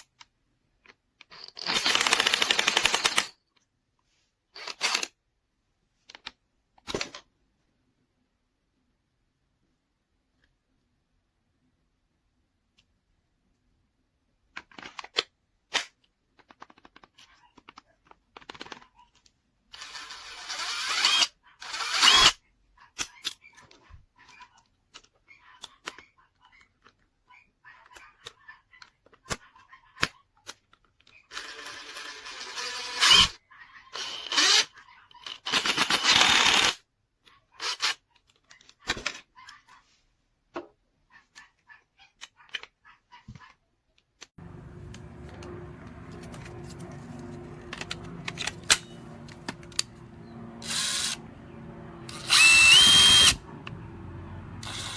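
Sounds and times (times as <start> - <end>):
impact wrench bursts: 44.4 - 54.9
socket and lug nuts clicking: 44.4 - 54.9.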